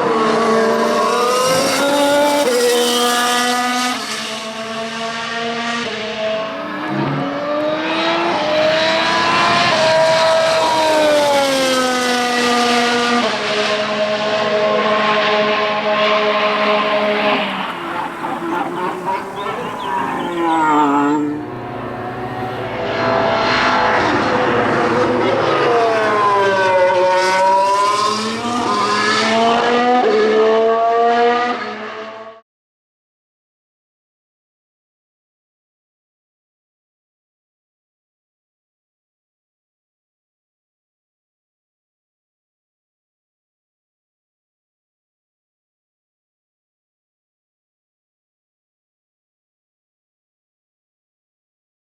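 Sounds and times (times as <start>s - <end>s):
race car engine at high revs: 0.0s - 32.4s.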